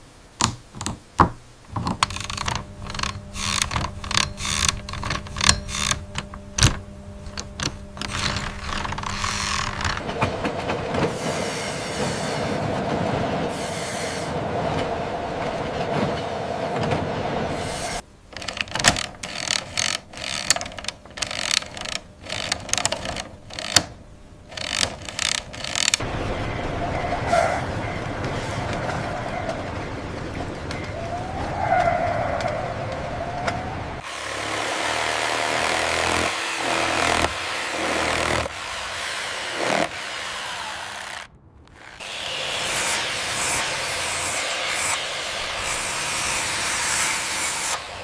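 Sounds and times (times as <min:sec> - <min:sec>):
continuous rumbling noise: 0:00.0 - 0:48.0
mechanical clicking and rattling: 0:00.4 - 0:11.0, 0:18.3 - 0:26.0
sharp clicks and knocks: 0:00.4 - 0:11.1, 0:18.3 - 0:26.0.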